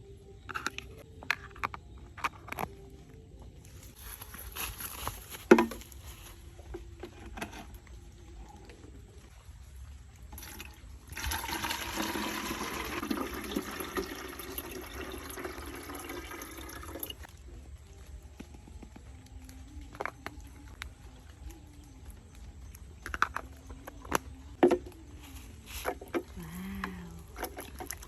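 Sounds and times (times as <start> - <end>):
water running: 9.3 - 17.3.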